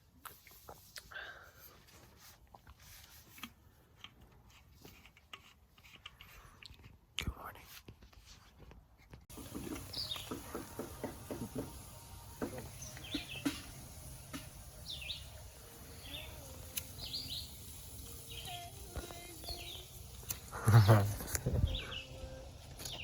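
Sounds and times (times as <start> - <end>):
small birds chirping: 9.3 - 23.0.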